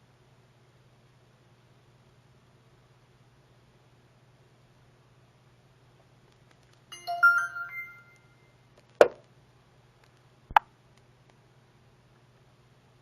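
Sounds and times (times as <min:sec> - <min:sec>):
faint steady hum: 0:00.0 - 0:13.0
electronic chime: 0:06.9 - 0:08.6
sharp knocks: 0:09.0 - 0:09.2.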